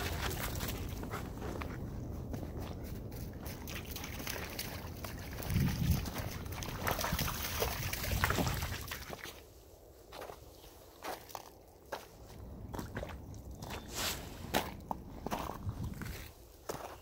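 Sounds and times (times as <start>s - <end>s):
wind buffeting microphone: 0.0s - 9.0s, 12.7s - 16.4s
footsteps in snow: 13.6s - 17.0s.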